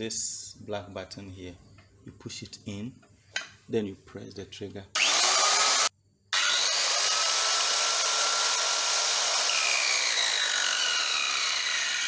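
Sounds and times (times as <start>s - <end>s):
circular saw motor and blade whine: 5.0s - 12.0s.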